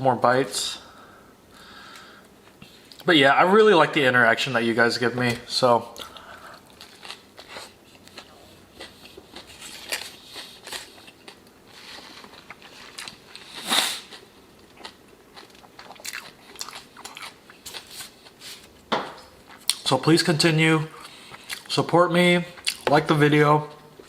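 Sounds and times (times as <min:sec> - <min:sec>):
chewing and crunching food: 0:05.9 - 0:18.5, 0:20.9 - 0:21.8, 0:22.4 - 0:22.9.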